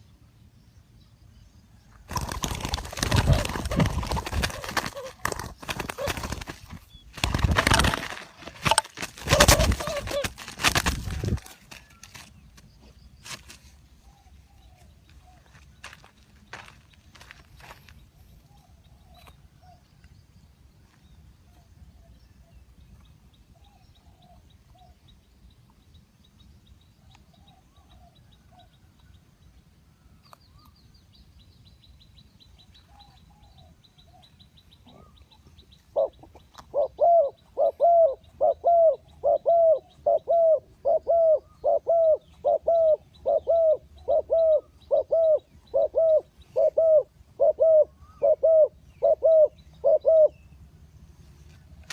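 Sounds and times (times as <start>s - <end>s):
bird hooting: 9.2s - 10.4s, 35.9s - 50.4s
bird calling softly: 32.6s - 50.5s.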